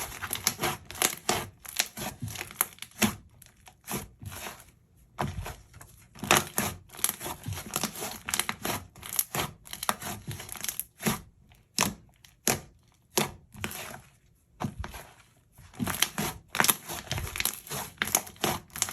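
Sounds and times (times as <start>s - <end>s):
slime squelching and popping: 0.0s - 4.4s, 5.2s - 13.9s, 14.6s - 18.9s.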